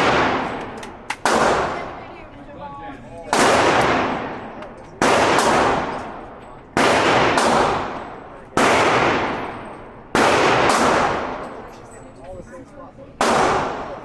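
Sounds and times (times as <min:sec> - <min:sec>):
loud gunshots with echo: 0:00.0 - 0:02.0, 0:03.3 - 0:11.7, 0:13.2 - 0:14.0
faint distant gunshot cracks: 0:13.2 - 0:14.0.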